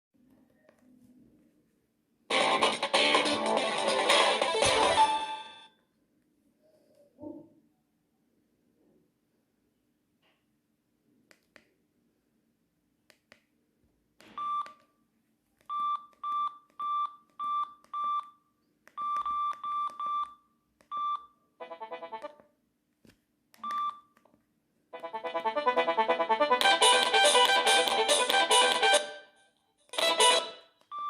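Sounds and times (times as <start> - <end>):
phone keypad beeps: 14.4 - 14.8, 15.7 - 18.4, 19.0 - 21.3, 23.6 - 24.2.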